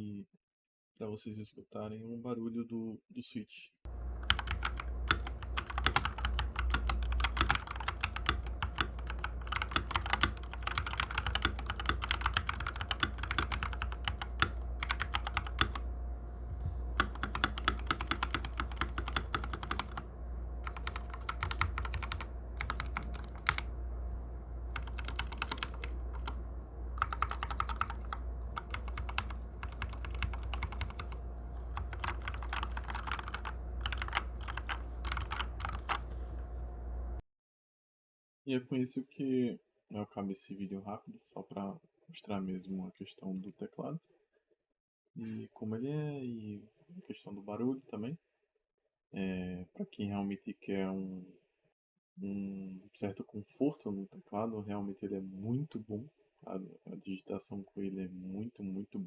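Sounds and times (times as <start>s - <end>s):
mechanical keyboard typing: 4.2s - 15.9s, 16.9s - 23.7s, 24.7s - 26.4s, 27.0s - 36.2s.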